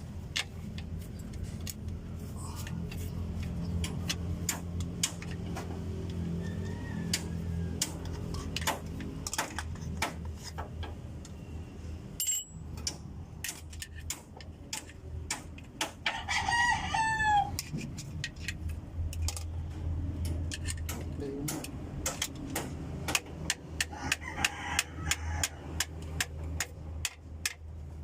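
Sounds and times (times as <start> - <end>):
rooster crowing: 6.1 - 7.9, 16.0 - 17.6, 23.8 - 25.7
hand tool clicks and taps: 20.2 - 27.6.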